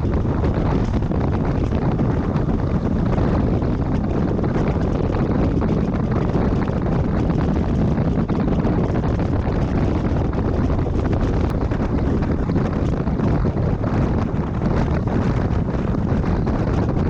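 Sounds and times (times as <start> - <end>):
heavy low rumble: 0.0 - 17.0
wind buffeting microphone: 0.0 - 17.0.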